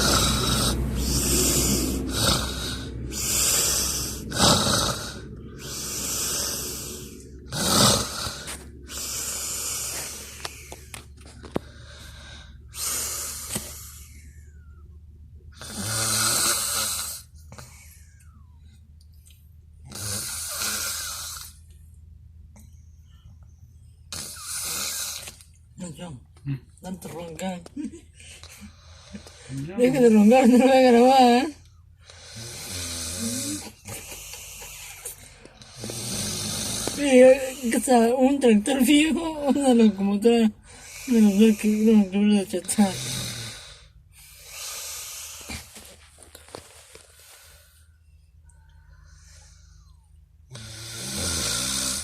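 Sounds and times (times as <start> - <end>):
man snoring loudly: 0.0 - 10.4, 15.6 - 17.3, 19.9 - 21.6, 24.1 - 25.3, 32.2 - 37.9, 42.7 - 45.6, 50.5 - 52.0.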